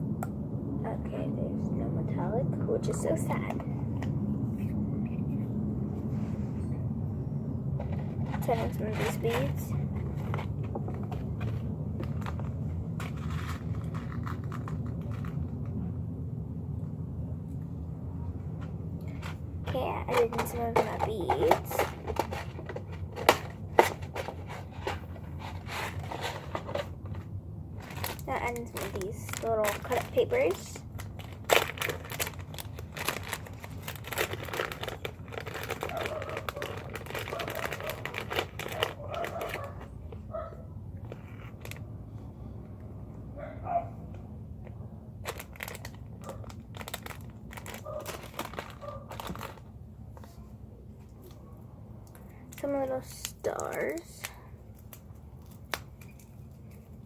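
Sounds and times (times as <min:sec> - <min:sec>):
low rumble: 0:00.0 - 0:20.1
paper crinkling and rustling: 0:07.8 - 0:15.8, 0:19.1 - 0:40.0, 0:45.2 - 0:50.4.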